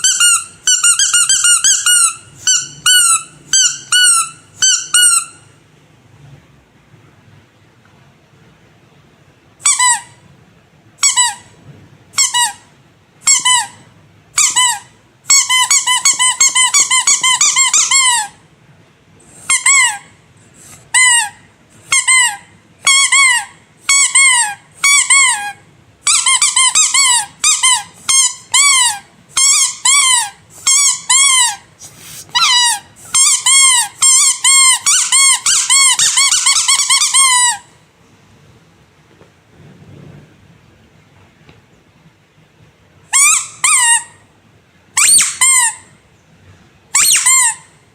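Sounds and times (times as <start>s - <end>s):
squeaky rubber toy squeaks: 0.0s - 5.6s, 9.6s - 10.2s, 11.0s - 18.4s, 19.3s - 20.2s, 20.9s - 37.8s, 43.1s - 44.2s, 45.0s - 45.9s, 46.9s - 47.8s.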